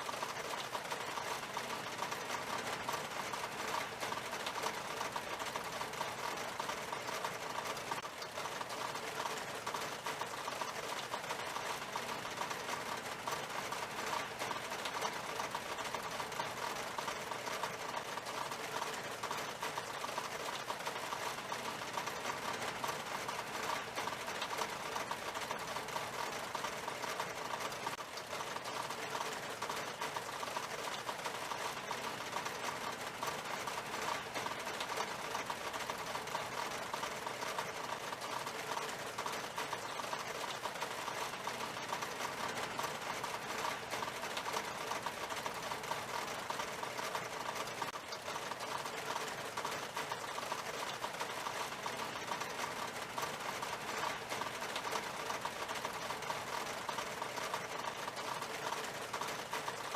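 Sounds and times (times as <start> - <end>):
rain on window glass: 0.0 - 59.9.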